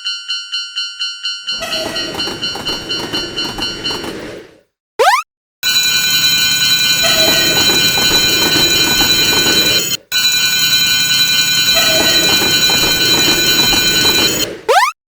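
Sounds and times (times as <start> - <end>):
railroad crossing bell clanging: 0.0 - 4.3, 5.6 - 14.5
train rumbling past: 1.5 - 4.6, 5.7 - 14.5.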